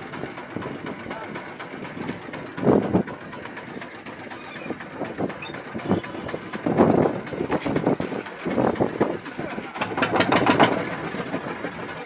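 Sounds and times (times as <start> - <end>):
wind buffeting microphone: 1.9 - 3.2, 4.8 - 11.5.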